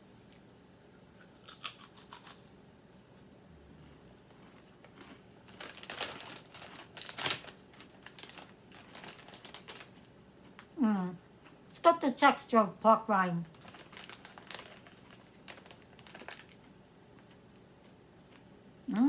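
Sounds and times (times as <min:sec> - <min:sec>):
crispy chip being chewed: 0:00.2 - 0:02.6, 0:03.8 - 0:10.7, 0:13.5 - 0:18.5.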